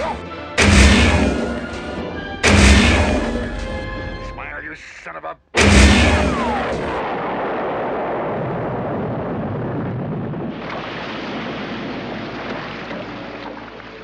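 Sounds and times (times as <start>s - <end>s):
explosion rumble: 0.6s - 4.8s, 5.6s - 12.1s.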